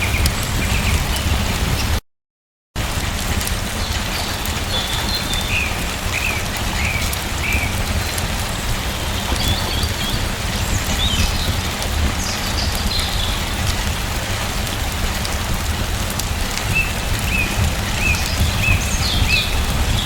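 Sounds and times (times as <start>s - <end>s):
steady rain falling: 0.0s - 2.0s, 2.8s - 20.0s.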